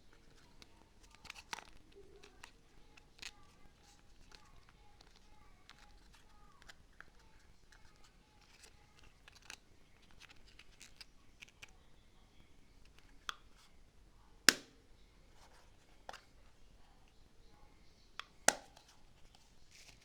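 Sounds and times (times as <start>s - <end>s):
plastic parts clicking and tapping: 0.1s - 11.8s, 18.2s - 20.0s.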